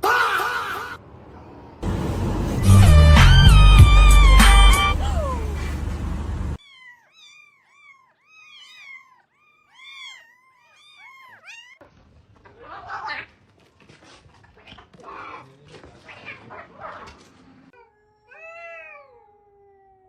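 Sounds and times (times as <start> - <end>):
loud music: 1.9 - 5.5
cat mewing: 6.6 - 11.8, 17.8 - 20.0.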